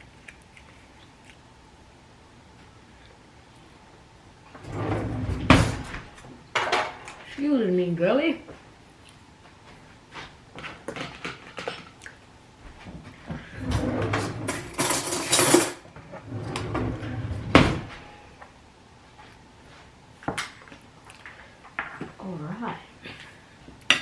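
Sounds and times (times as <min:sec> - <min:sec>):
dishes and utensils clinking: 0:05.7 - 0:07.2, 0:13.7 - 0:15.8.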